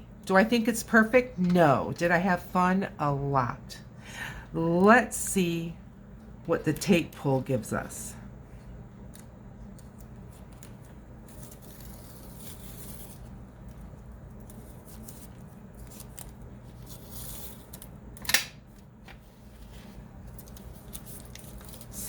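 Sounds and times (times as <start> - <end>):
tape peeling off paper: 9.1 - 18.4, 20.3 - 22.0
sharp tape snap: 18.2 - 18.6.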